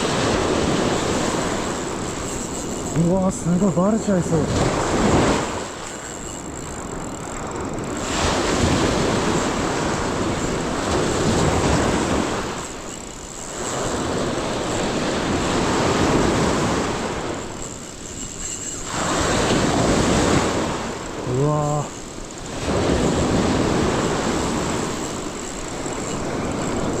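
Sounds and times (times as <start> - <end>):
surf breaking on a beach: 0.0 - 5.8, 8.0 - 12.8, 13.5 - 17.6, 18.8 - 27.0
wind buffeting microphone: 0.0 - 27.0.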